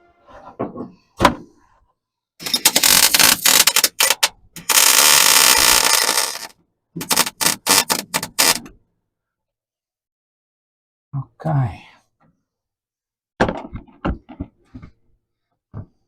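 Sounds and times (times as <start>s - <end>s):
welder arc crackling: 2.5s - 6.5s, 7.1s - 8.6s.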